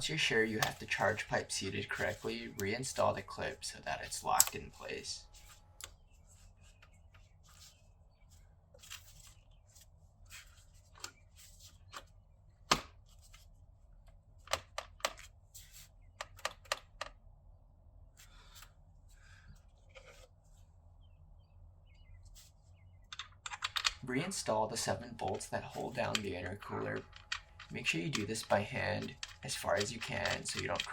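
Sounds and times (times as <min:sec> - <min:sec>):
clicks and knocks of parts handled: 0:00.1 - 0:03.3, 0:04.1 - 0:06.0, 0:14.0 - 0:17.2, 0:23.0 - 0:24.0, 0:24.8 - 0:30.9.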